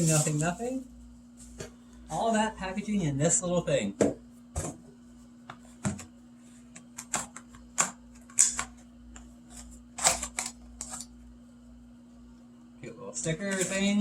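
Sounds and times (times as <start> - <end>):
plastic packaging crinkling: 0.0 - 0.8.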